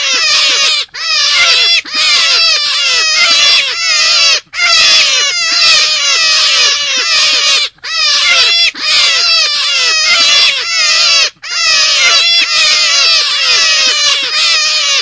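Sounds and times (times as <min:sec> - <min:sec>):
shrill animal cry: 0:00.0 - 0:15.0.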